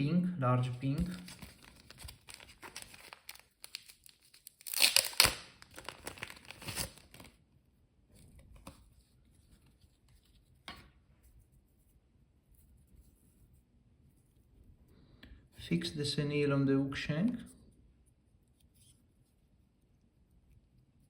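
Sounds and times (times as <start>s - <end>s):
plastic packaging crinkling: 0.9s - 7.4s.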